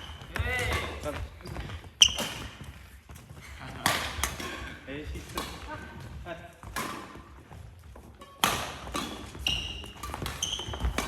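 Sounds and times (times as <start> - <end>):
shoes squeaking on court floor: 0.0 - 11.0
racket striking shuttlecock: 2.0 - 2.7, 3.8 - 6.0, 6.6 - 7.4, 8.0 - 11.0.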